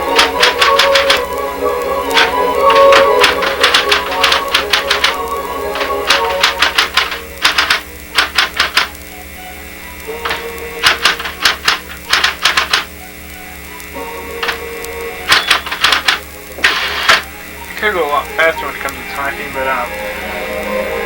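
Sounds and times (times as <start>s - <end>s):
electric typewriter keys striking: 0.0s - 1.4s, 2.1s - 9.0s, 10.2s - 12.9s, 14.4s - 14.6s, 15.3s - 17.3s
steady low hum: 0.0s - 21.0s.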